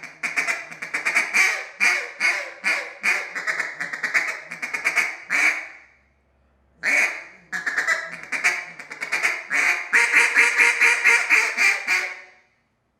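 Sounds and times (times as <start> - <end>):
duck call quacks: 0.0 - 5.8, 6.8 - 12.4.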